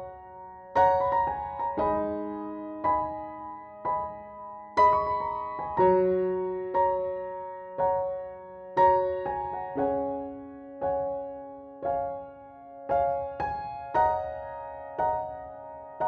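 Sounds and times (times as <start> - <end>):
slow gentle piano chords: 0.0 - 16.0.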